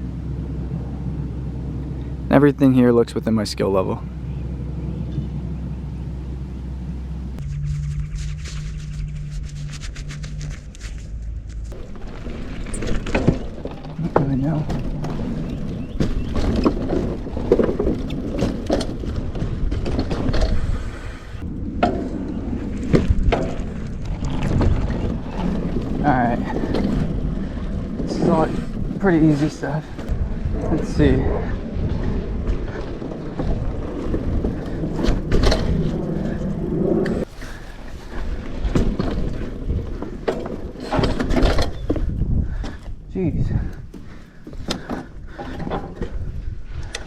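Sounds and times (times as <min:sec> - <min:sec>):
bike tyre rumble: 0:00.0 - 0:47.0
wind buffeting microphone: 0:00.0 - 0:47.0
bike knocks and clunks: 0:11.6 - 0:30.2, 0:31.8 - 0:47.0.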